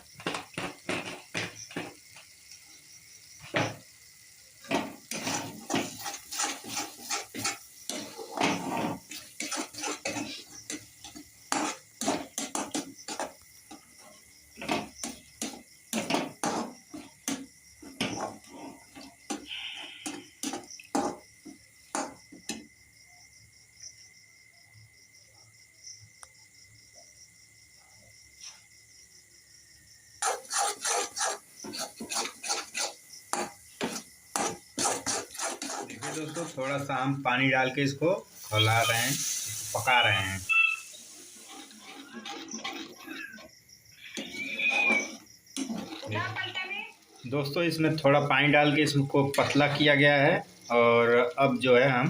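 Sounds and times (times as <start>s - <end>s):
spoon scraping and knocking pan: 0.2s - 2.2s, 3.4s - 3.9s, 4.6s - 22.7s, 30.2s - 37.2s, 40.7s - 46.5s, 48.7s - 50.0s.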